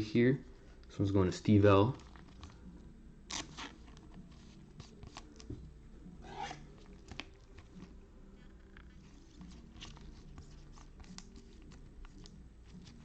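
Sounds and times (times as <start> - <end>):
cards swishing: 3.3 - 5.5, 8.8 - 13.0.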